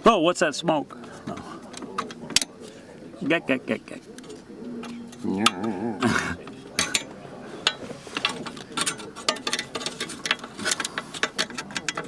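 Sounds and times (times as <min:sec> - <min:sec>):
clicks and knocks of hand tools: 0:01.0 - 0:02.6, 0:06.5 - 0:12.0.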